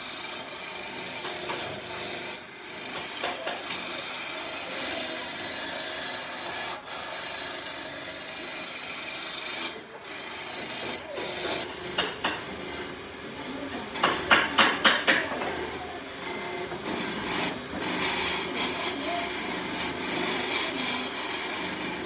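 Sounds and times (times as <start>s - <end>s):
tool rasping wood: 0.6s - 22.0s
sharp knocks: 14.0s - 15.6s.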